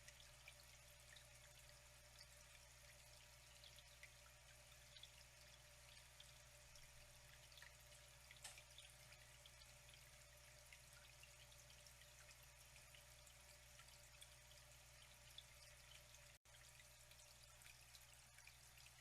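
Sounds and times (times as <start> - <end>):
water drips and splashes: 0.0 - 19.0
water trickling: 0.0 - 19.0.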